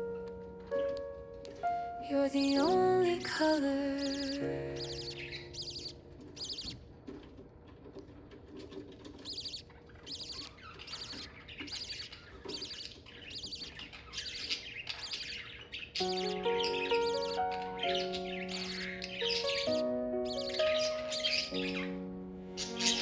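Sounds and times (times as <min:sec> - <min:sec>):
budgerigars chirping: 0:03.8 - 0:07.3, 0:08.5 - 0:23.0.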